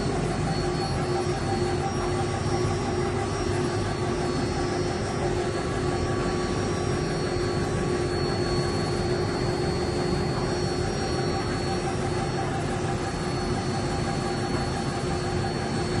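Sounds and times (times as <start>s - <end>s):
engraving machine whine: 0.0s - 16.0s.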